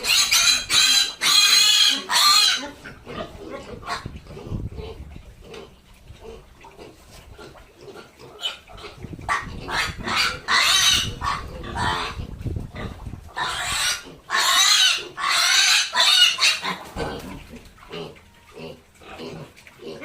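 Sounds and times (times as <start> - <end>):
pig squealing: 0.0 - 20.0.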